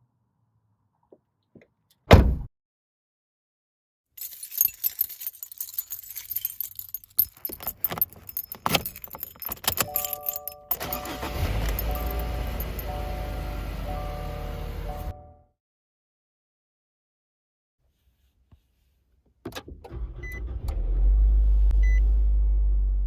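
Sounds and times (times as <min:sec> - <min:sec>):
keys jangling: 0:04.2 - 0:13.0
car door shutting: 0:10.8 - 0:15.1.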